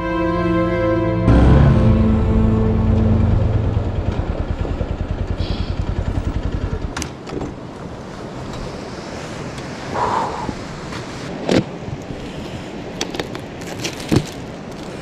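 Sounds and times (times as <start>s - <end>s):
motorcycle engine idling: 1.3s - 7.0s.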